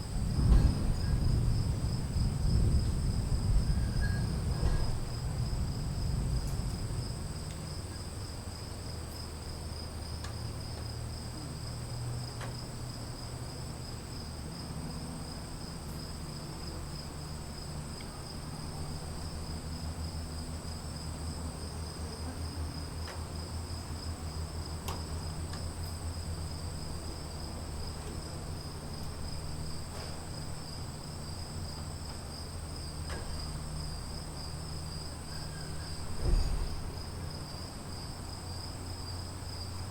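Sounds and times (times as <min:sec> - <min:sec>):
continuous low rumble: 0:00.0 - 0:39.9
crickets trilling: 0:00.0 - 0:39.9
faint ticks: 0:10.2 - 0:10.9.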